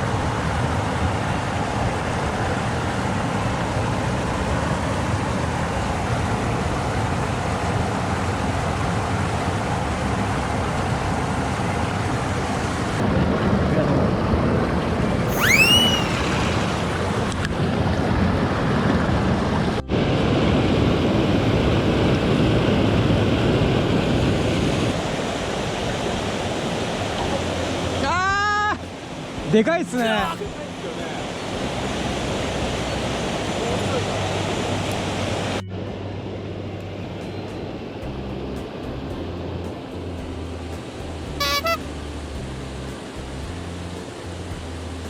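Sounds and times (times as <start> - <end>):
rising whistle: 15.3 - 17.3
mountain stream rushing: 15.3 - 21.4, 23.8 - 35.6.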